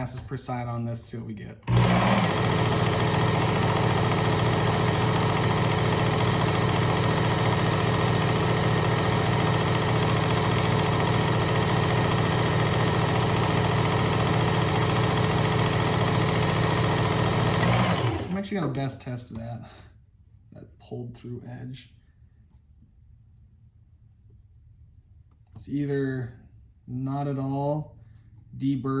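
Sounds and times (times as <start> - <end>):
electric belt sharpener running: 1.7 - 18.4.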